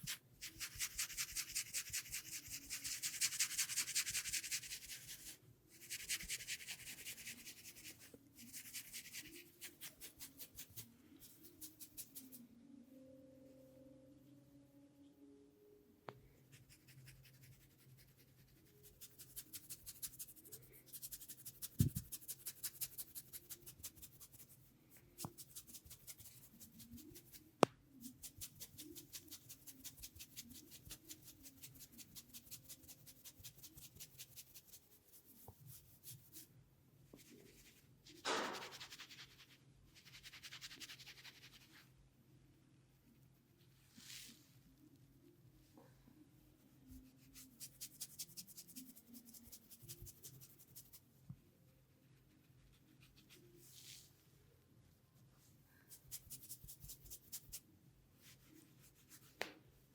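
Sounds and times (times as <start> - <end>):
hands rubbing oiled skin: 0.0 - 12.4, 25.2 - 27.4, 37.2 - 41.7.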